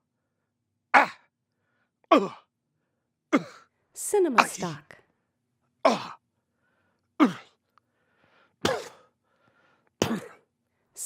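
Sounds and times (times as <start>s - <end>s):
man grunting in pain: 1.0s - 1.2s, 2.1s - 2.4s, 5.8s - 6.2s, 7.2s - 7.5s.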